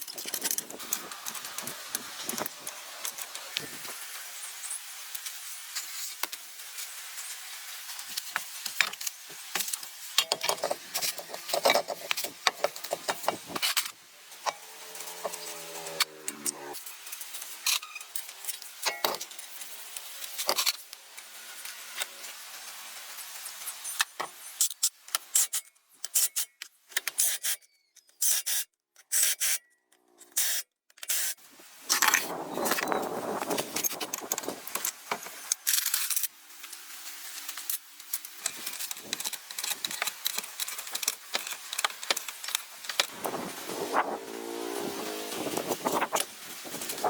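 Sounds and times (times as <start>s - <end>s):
scraping and rubbing on metal: 10.2s - 16.8s, 43.1s - 47.0s
small motor hum: 14.4s - 16.8s, 43.1s - 46.0s.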